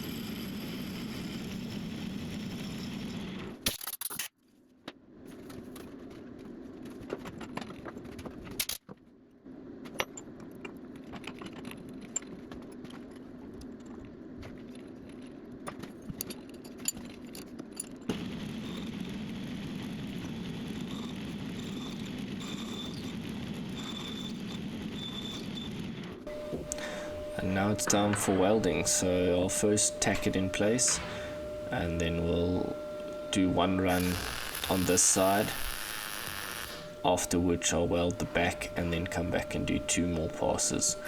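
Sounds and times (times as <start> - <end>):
high-pitched whine: 26.3 - 41.0
metalworking machine running: 26.3 - 41.0.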